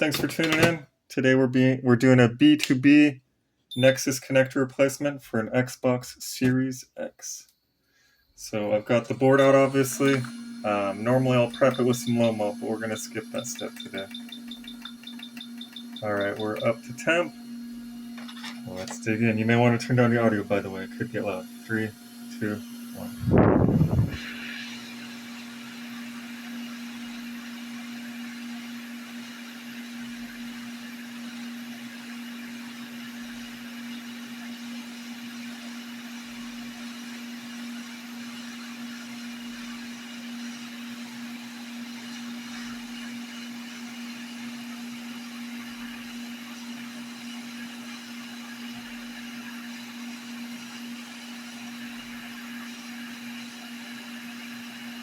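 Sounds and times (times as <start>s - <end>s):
hot-air station fan hum: 0.0s - 0.8s, 8.4s - 25.4s.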